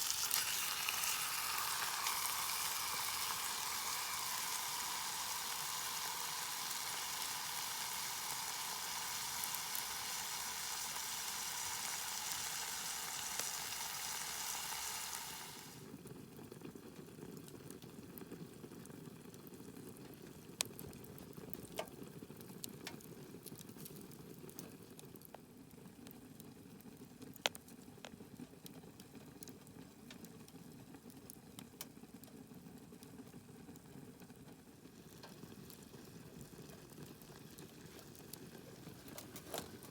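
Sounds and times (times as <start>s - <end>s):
food sizzling in a pan: 0.0s - 16.0s.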